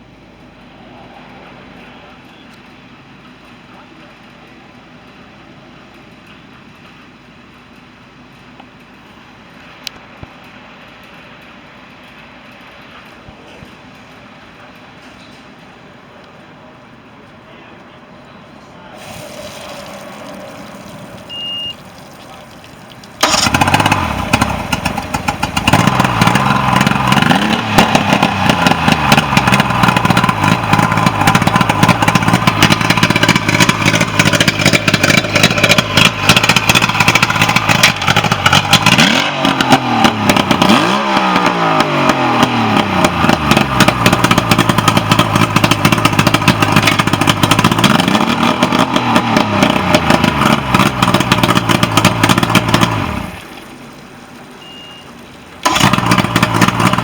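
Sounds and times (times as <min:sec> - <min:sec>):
boat motor revving: 0:23.2 - 0:53.5, 0:55.6 - 0:57.0.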